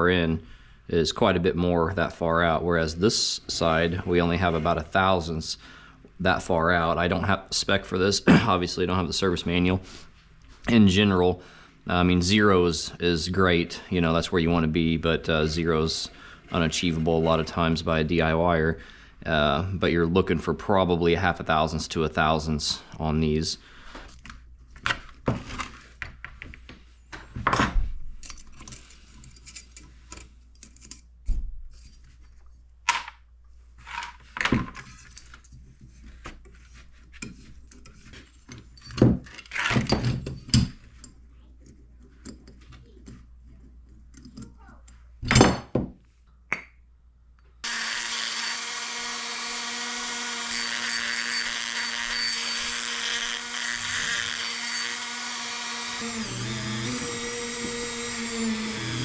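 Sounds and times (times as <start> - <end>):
power tool whining: 47.6 - 59.0.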